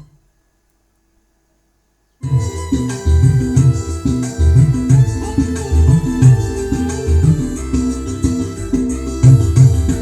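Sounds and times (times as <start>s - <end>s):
music with heavy pulsing bass: 2.2s - 10.0s.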